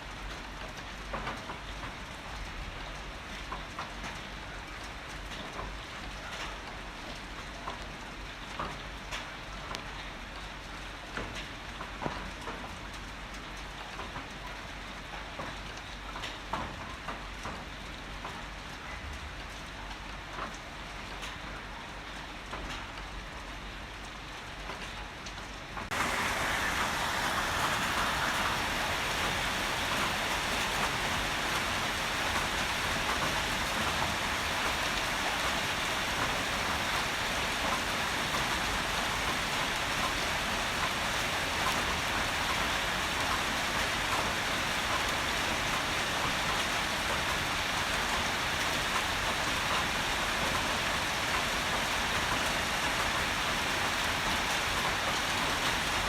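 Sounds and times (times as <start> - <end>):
heavy rain hissing: 25.9 - 56.0.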